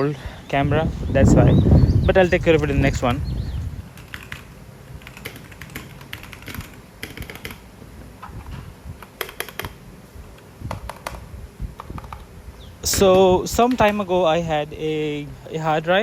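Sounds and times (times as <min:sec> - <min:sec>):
mechanical keyboard key clicks: 0:09.0 - 0:09.8.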